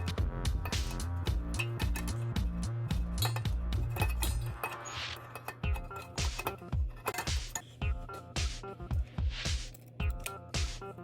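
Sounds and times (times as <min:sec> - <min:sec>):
background music with beat: 0:00.0 - 0:11.0.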